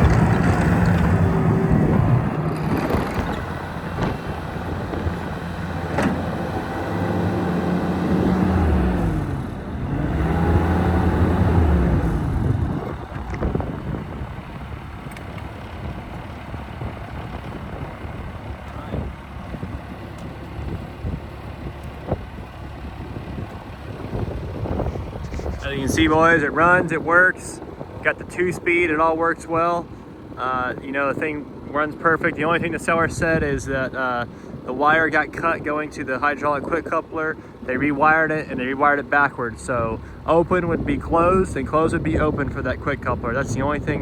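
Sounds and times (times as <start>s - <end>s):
clicks and knocks: 0.0s - 4.2s
track loader diesel engine: 0.0s - 44.0s.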